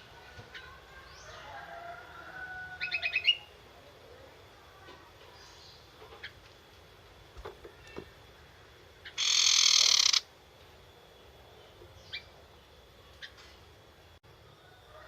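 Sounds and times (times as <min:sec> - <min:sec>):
faint bird chirps: 0:09.0 - 0:10.3
bird harsh rapid notes: 0:09.1 - 0:10.3.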